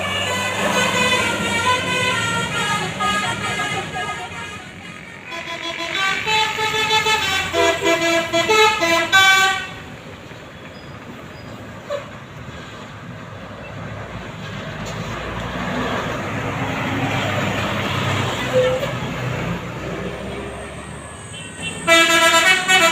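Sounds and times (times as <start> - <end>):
bus horn playing a tune: 0.0 - 10.0, 21.3 - 22.9
vehicle and road noise: 0.0 - 22.9.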